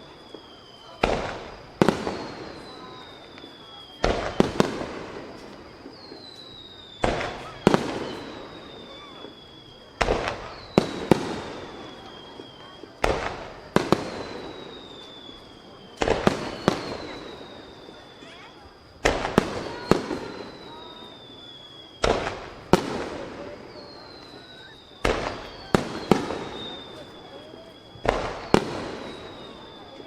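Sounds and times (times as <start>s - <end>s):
falling whistle: 0.0s - 30.0s
firework crackle: 0.0s - 30.0s.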